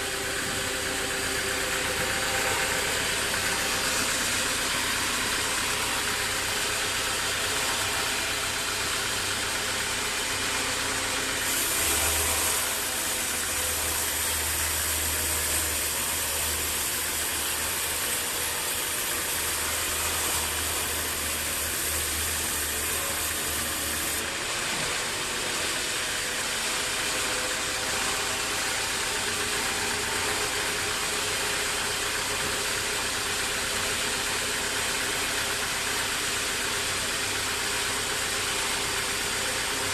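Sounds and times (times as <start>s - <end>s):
band sawmill machinery running: 0.0s - 39.9s
loud hiss: 11.1s - 24.2s.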